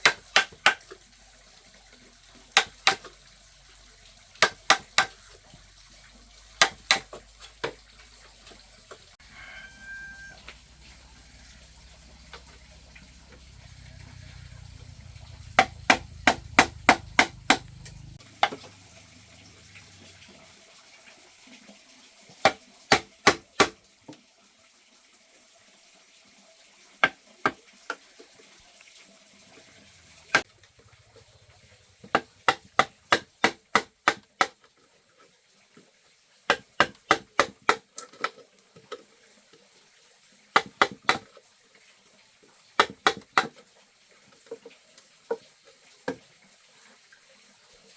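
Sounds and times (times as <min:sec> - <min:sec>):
sharp knocks in bursts: 0:02.6 - 0:03.1, 0:04.4 - 0:05.2, 0:06.6 - 0:07.8, 0:15.4 - 0:18.7, 0:32.0 - 0:34.5, 0:42.8 - 0:43.5.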